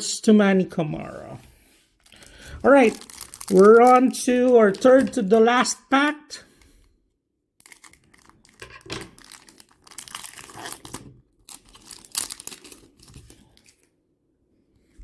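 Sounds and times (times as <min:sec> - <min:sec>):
plastic foil wrapper crinkling: 0:02.0 - 0:05.4, 0:07.6 - 0:13.9.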